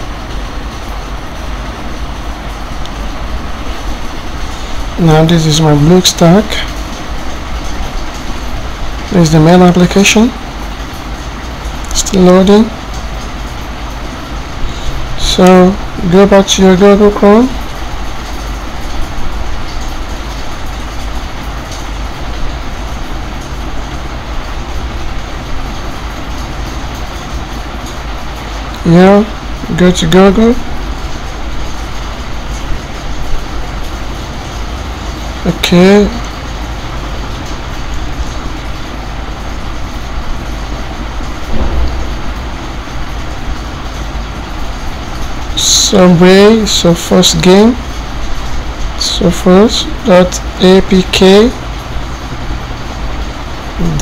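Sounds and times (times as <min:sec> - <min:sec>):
background rumble and hiss: 0:00.0 - 0:54.0
steady rumbling: 0:40.3 - 0:46.9
low rumble: 0:41.3 - 0:44.0.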